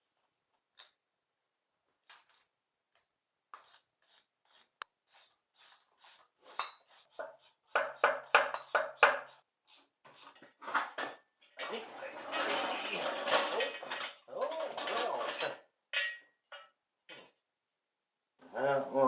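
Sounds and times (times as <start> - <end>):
hand ratchet rasping: 3.6 - 9.4.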